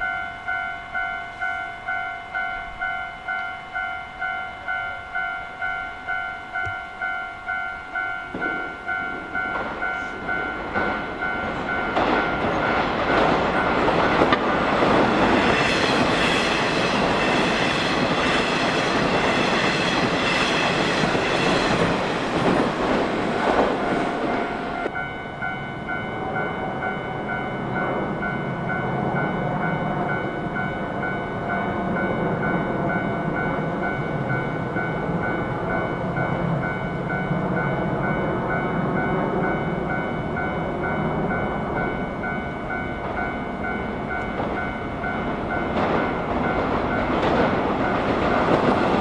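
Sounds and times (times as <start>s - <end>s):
level-crossing warning bell: 0.0s - 49.0s
train wheels clattering over rails: 9.4s - 24.9s, 43.0s - 49.0s.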